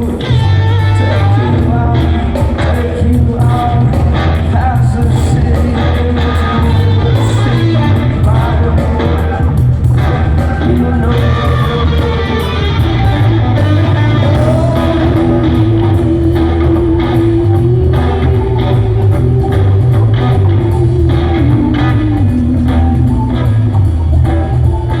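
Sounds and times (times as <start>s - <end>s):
rock band playing loud: 0.0s - 25.0s.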